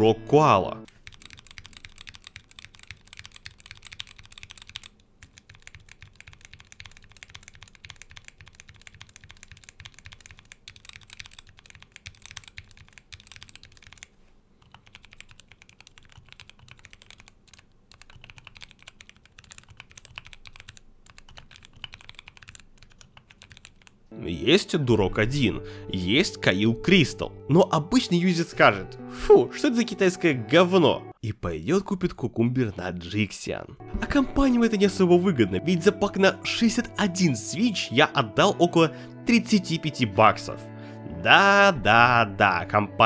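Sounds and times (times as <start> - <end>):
mechanical keyboard typing: 0.8 - 24.0.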